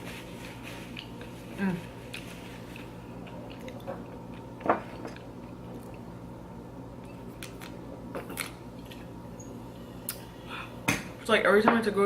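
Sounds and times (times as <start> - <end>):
chewing crunchy chips: 0.8 - 6.1.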